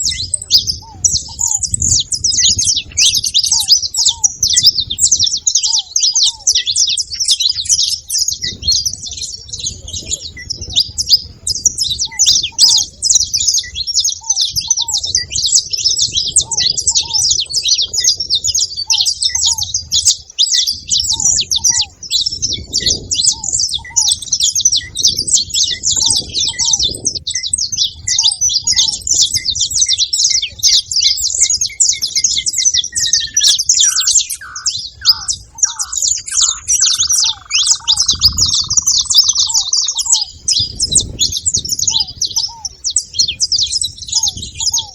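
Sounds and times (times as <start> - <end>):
finches chirping and twittering: 0.0 - 44.9
short repeating bird call: 32.8 - 40.3.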